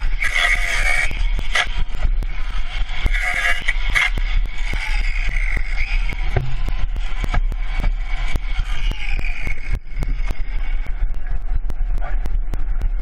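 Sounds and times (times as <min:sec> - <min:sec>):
motorcycle engine: 0:01.0 - 0:09.7.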